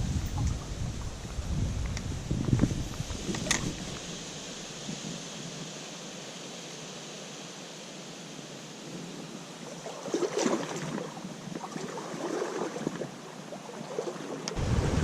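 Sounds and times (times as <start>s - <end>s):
wind rumble on microphone: 0.0s - 5.6s, 14.4s - 15.0s
creek water running: 0.0s - 15.0s.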